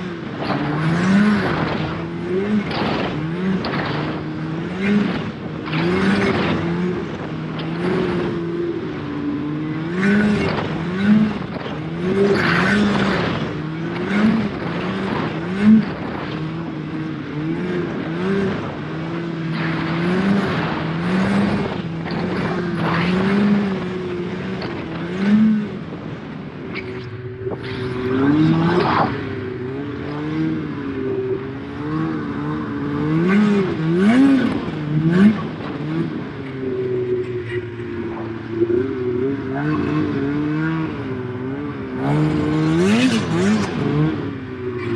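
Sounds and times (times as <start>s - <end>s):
snowmobile engine revving: 0.0s - 44.9s
rushing noise: 24.4s - 36.0s.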